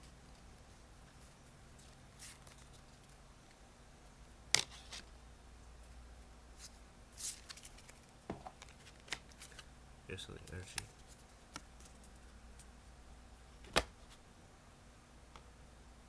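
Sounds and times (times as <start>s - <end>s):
trading cards rustling: 7.2s - 9.7s
cards snapping: 13.7s - 14.0s.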